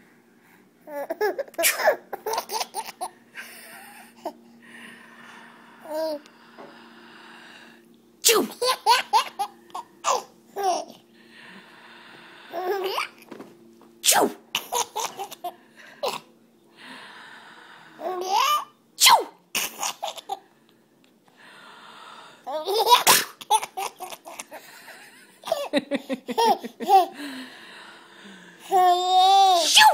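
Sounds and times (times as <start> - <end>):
baby giggling: 0.9 - 3.1, 22.5 - 27.2
woman sneezing: 8.2 - 8.6, 14.0 - 14.4, 19.0 - 19.4, 29.6 - 29.9.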